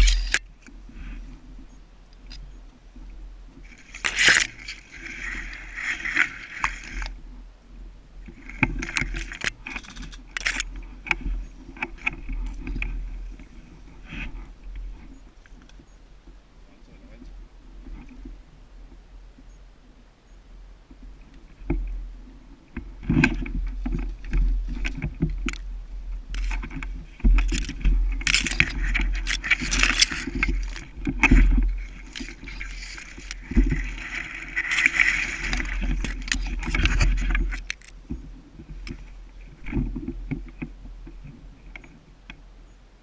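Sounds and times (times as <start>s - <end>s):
gear clicking and rattling: 0.0s - 0.4s, 3.7s - 7.1s, 8.3s - 13.5s, 26.2s - 40.7s
rustling through undergrowth: 0.0s - 15.9s, 21.0s - 42.0s.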